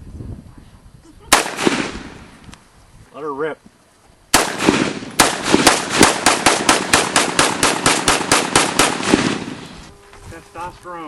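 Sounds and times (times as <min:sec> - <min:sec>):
rapid gunfire: 0:01.3 - 0:02.1, 0:04.4 - 0:09.6.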